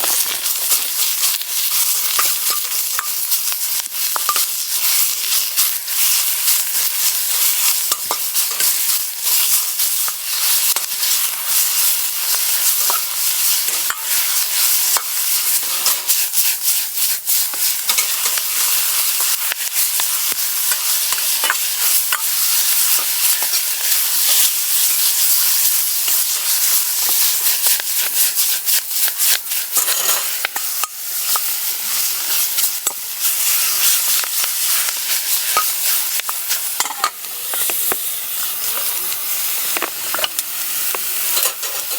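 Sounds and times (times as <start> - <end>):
food sizzling in a pan: 0.0 - 41.9
utensil scraping a pan: 26.1 - 41.9.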